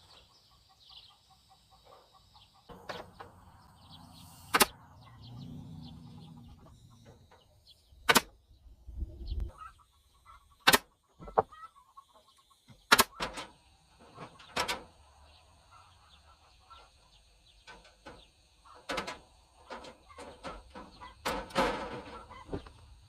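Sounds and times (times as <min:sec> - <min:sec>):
metallic rattles: 0:18.8 - 0:22.6.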